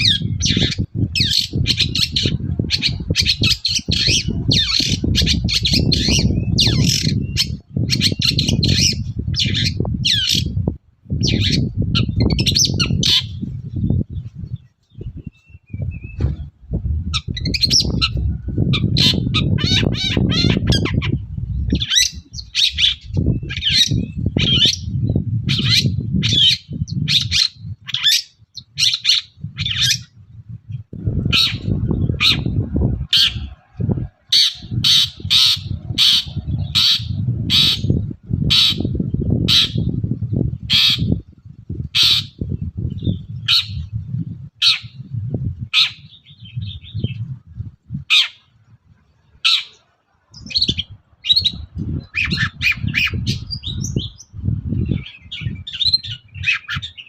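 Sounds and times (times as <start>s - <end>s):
low rumbling noise: 0.0s - 27.9s, 29.3s - 48.1s
bird singing harsh scratchy bursts: 0.0s - 30.2s, 48.1s - 57.0s.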